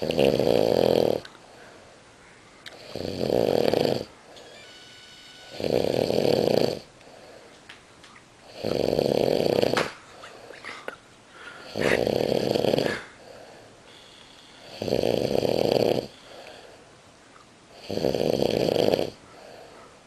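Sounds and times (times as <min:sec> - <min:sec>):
man snoring loudly: 0:00.0 - 0:01.2, 0:02.8 - 0:04.1, 0:05.5 - 0:06.9, 0:08.5 - 0:09.9, 0:11.6 - 0:13.1, 0:14.6 - 0:16.4, 0:17.8 - 0:19.2
quiet breathing: 0:00.0 - 0:04.5, 0:06.2 - 0:07.7, 0:08.4 - 0:18.1, 0:19.1 - 0:20.0.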